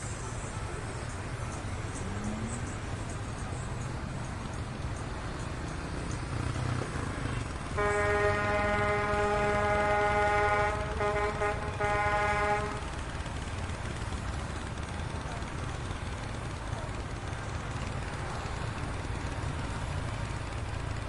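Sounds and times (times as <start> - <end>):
street traffic rumble: 0.0 - 21.0
vehicle horn blasts: 7.8 - 12.9.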